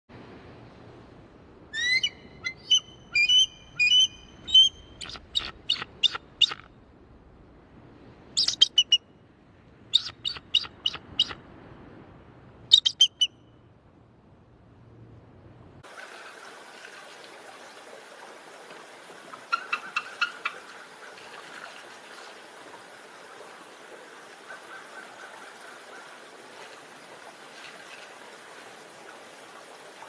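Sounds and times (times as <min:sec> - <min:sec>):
eagle calling with chittering notes: 0:01.7 - 0:06.7, 0:08.4 - 0:09.0, 0:09.9 - 0:11.4, 0:12.7 - 0:13.3.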